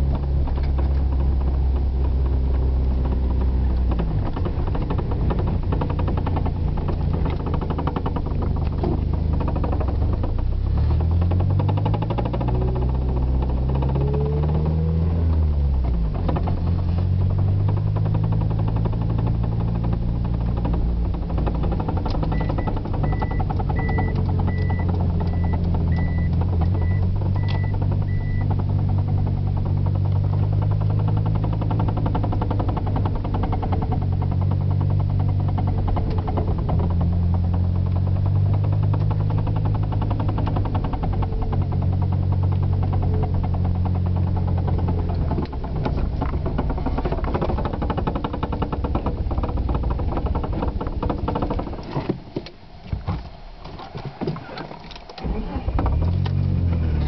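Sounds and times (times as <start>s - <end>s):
car engine revving: 0.0s - 54.6s, 55.2s - 57.0s
fast knocking from car: 17.5s - 52.4s
steady beeping: 22.3s - 28.5s.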